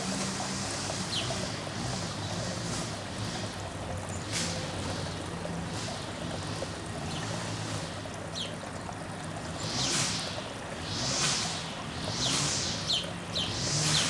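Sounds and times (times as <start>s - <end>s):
whooshes of hiss: 9.6s - 13.0s.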